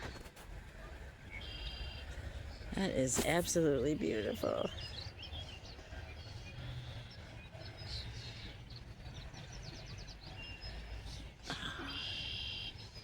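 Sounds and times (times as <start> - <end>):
small birds chirping: 1.3 - 13.0.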